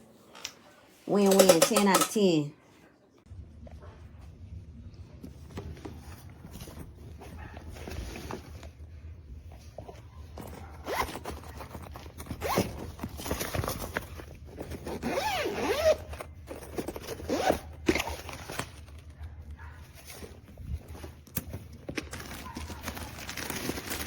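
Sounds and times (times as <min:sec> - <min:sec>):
luggage zipper pulled: 0:10.7 - 0:18.6.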